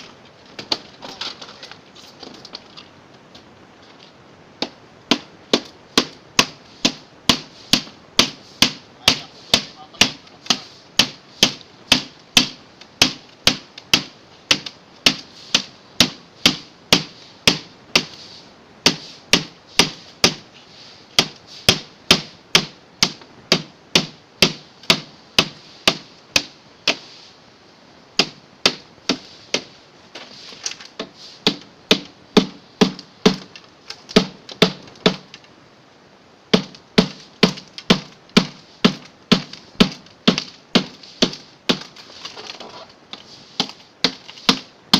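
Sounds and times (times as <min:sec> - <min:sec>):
hammer striking refrigerator: 0:18.8 - 0:20.4, 0:21.2 - 0:27.0, 0:31.4 - 0:33.5, 0:36.5 - 0:41.9.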